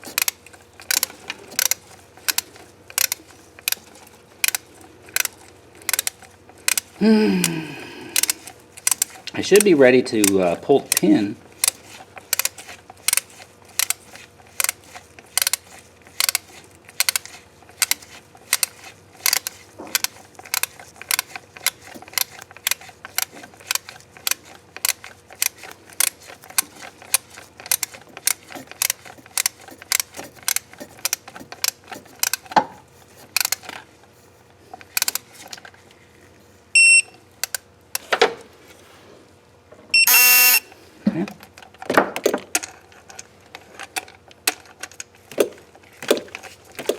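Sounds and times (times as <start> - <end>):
ratcheting wrench clicking: 0.0 - 7.0, 8.2 - 32.6, 33.3 - 33.7
electronic beeps: 36.8 - 37.1, 40.0 - 40.7.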